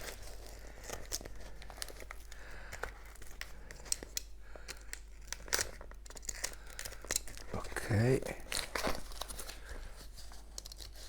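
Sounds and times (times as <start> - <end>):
packaging tearing and crinkling: 0.0 - 11.0.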